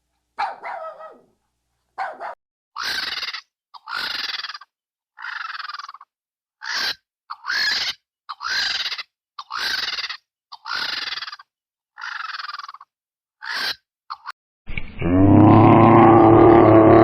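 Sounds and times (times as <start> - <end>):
animal harsh calls: 2.8 - 14.3.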